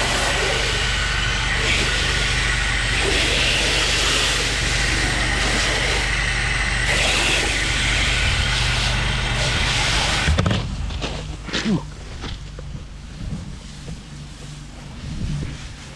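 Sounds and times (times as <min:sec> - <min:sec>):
high-pressure water spray hissing: 0:00.0 - 0:10.3
pressure washer engine hum: 0:00.0 - 0:15.9.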